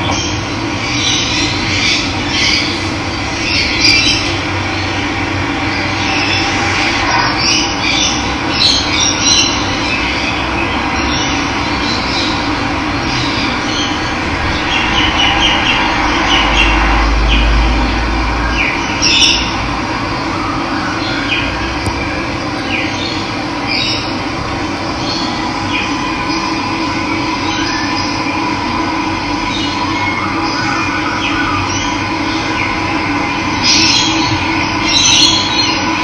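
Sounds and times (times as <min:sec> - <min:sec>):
birds chirping: 0:20.9 - 0:28.3.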